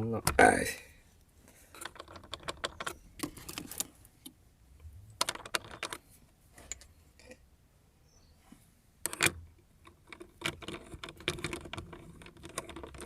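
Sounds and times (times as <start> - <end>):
plastic dial rattling and clicking: 1.7 - 3.9, 5.2 - 6.0, 9.1 - 13.0.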